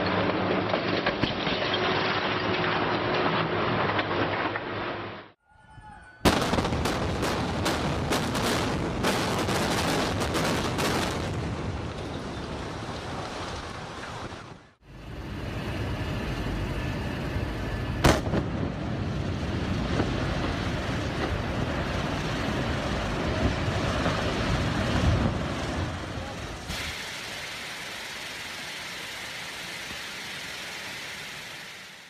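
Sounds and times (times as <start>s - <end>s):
building collapse rumble: 6.2s - 26.8s.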